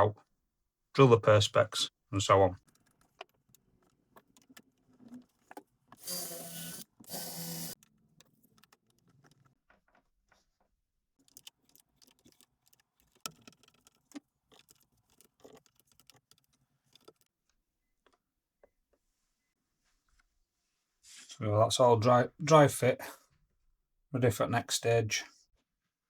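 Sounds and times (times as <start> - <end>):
power drill whining: 6.0 - 7.8.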